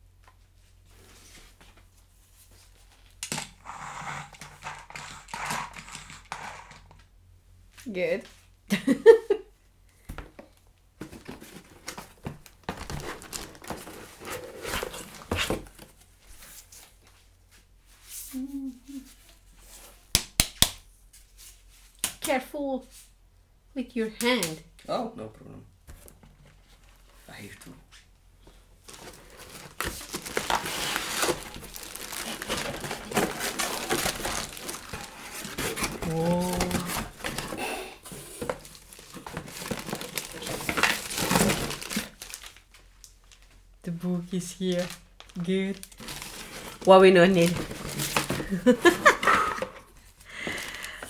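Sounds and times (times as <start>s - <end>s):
cardboard scrapes and knocks: 11.0s - 16.7s, 28.9s - 42.0s, 46.0s - 49.7s
paper and plastic crinkling: 11.0s - 17.0s, 28.5s - 43.6s, 44.4s - 51.0s.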